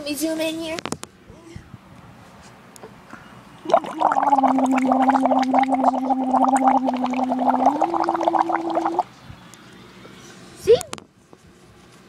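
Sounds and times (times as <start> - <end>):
air bubbling through water: 3.6 - 9.0
steady pitched tone: 3.7 - 9.0.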